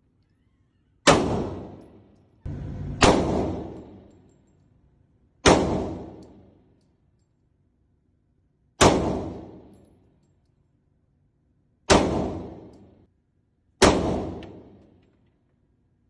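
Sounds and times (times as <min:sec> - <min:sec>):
rifle shots echoing: 0:01.1 - 0:02.0, 0:02.8 - 0:04.0, 0:05.4 - 0:06.3, 0:11.9 - 0:12.8, 0:13.8 - 0:14.8.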